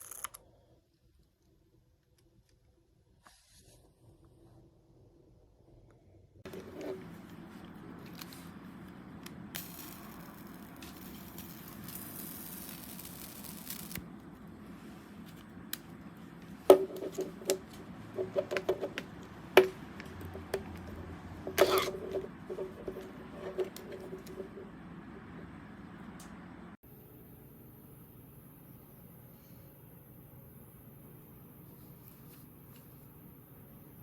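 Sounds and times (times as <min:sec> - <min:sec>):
hard objects clicking and knocking: 0:16.7 - 0:24.8.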